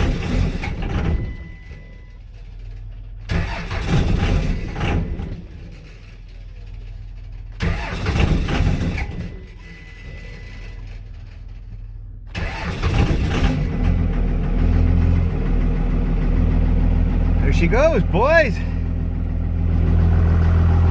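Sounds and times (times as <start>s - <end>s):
diesel engine starter cranking: 0.0s - 15.0s
diesel engine running: 0.0s - 20.9s.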